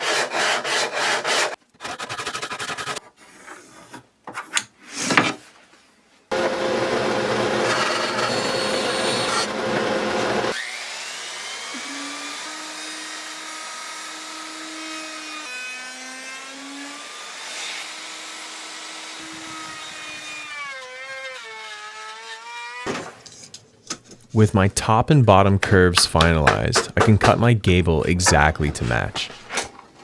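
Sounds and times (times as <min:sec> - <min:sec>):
sawing or sanding wood: 0:00.0 - 0:03.0, 0:07.4 - 0:09.5.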